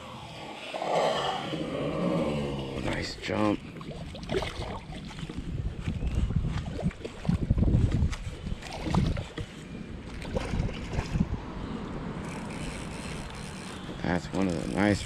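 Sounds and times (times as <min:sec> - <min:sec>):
wind buffeting microphone: 0:01.4 - 0:15.0
water splashing from fish: 0:03.5 - 0:05.3, 0:08.6 - 0:09.4, 0:10.1 - 0:11.3.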